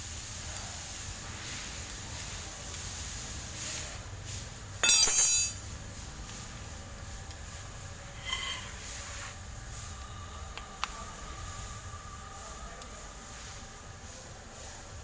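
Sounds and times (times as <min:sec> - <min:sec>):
metal tools clattering: 0:04.8 - 0:05.6
ringing metal clang: 0:04.8 - 0:05.6.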